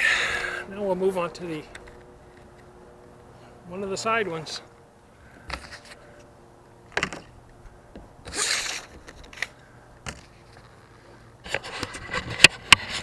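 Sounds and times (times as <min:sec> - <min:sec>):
sharp handling clicks and knocks: 0:04.2 - 0:13.0.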